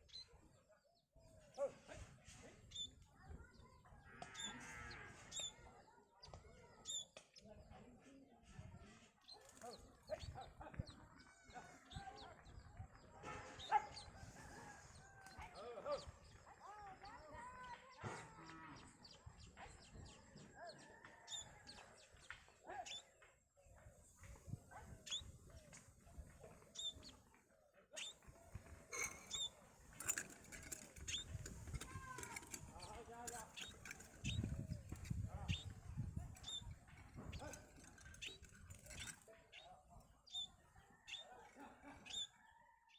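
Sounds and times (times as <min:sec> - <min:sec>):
small birds chirping: 0:00.0 - 0:08.0, 0:08.8 - 0:17.9, 0:18.8 - 0:42.5
chickens chirping and clucking: 0:28.0 - 0:39.4.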